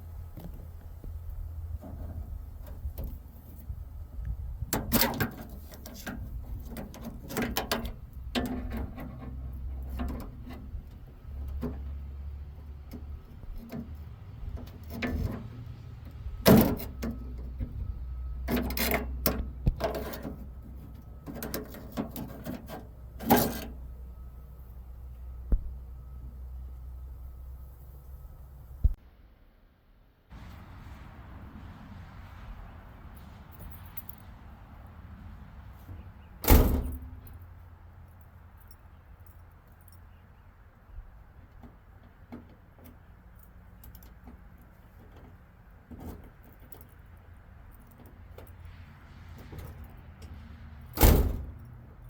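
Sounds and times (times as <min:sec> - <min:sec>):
knocks and clatters of parts: 0:04.7 - 0:12.1, 0:18.5 - 0:23.8.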